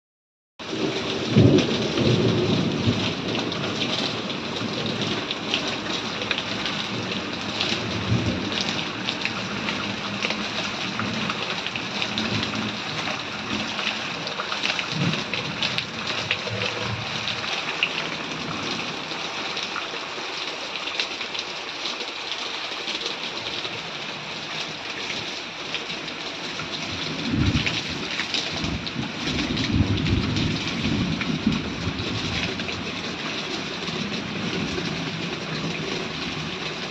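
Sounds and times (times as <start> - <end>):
heavy rain falling: 0.6 - 36.9
thunder rumbling: 0.7 - 19.2, 26.9 - 33.2.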